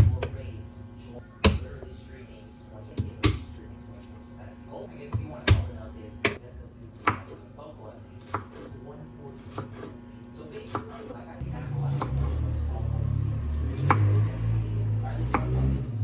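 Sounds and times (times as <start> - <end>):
knife chopping on cutting board: 3.0 - 4.1, 5.1 - 6.4, 7.0 - 7.4, 8.2 - 8.7, 9.4 - 10.0, 10.6 - 12.3, 13.8 - 14.2, 15.3 - 15.8.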